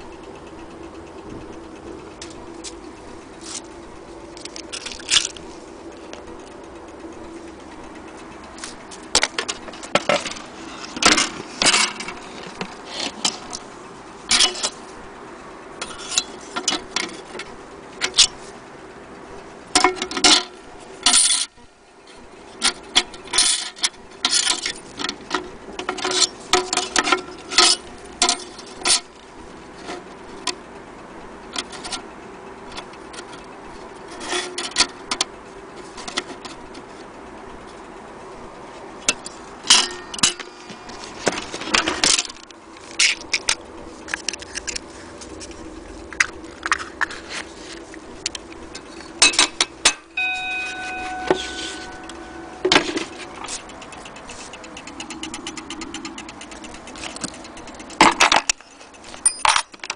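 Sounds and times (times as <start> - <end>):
clock clicking and clattering: 0.0 - 18.4, 22.2 - 30.7, 47.9 - 59.9
faint steady hum: 0.0 - 59.9.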